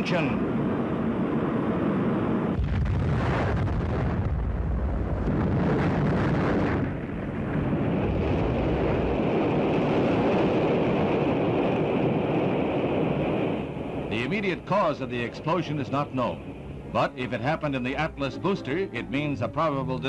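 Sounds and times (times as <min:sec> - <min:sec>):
rocket explosion roar: 0:01.9 - 0:14.1.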